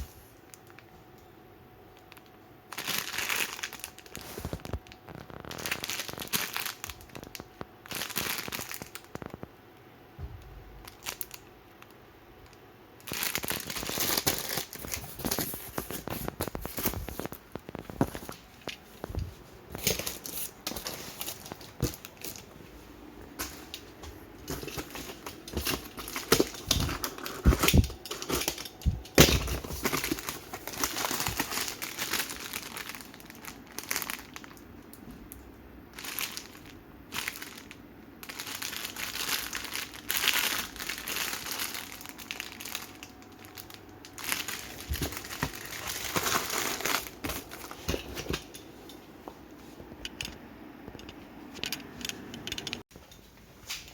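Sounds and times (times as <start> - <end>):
plastic packets crinkling: 2.0 - 9.5, 10.8 - 22.6, 23.2 - 34.8, 35.9 - 48.6
plastic tearing: 2.8 - 9.5, 13.0 - 18.4, 24.5 - 34.6.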